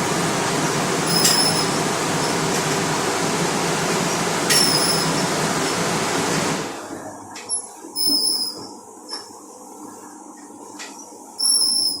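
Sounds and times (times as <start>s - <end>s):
dishwasher hissing: 0.0s - 6.7s
dishwasher machine noise: 0.0s - 12.0s.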